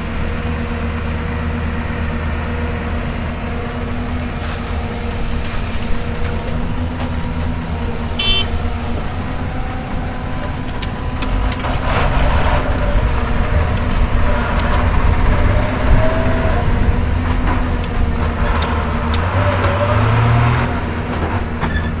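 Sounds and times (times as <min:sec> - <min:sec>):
excavator diesel engine running: 0:00.0 - 0:22.0
sharp clicks and knocks: 0:09.9 - 0:15.6.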